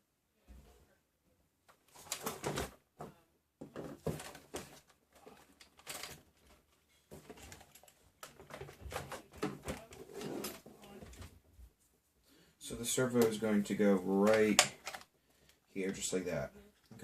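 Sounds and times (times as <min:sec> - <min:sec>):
toy car clicks and rustles: 0:05.3 - 0:06.6.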